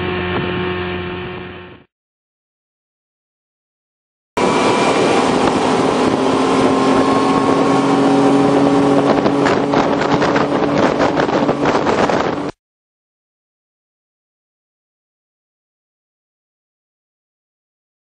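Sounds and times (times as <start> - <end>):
outboard motor running: 0.0 - 1.9, 4.4 - 12.6
wind on microphone: 4.4 - 12.6.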